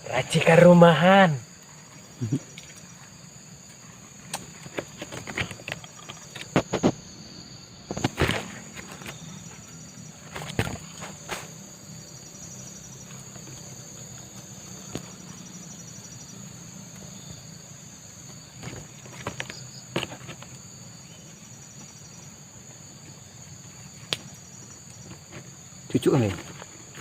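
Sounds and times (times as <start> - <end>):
insects trilling: 0.0 - 27.0.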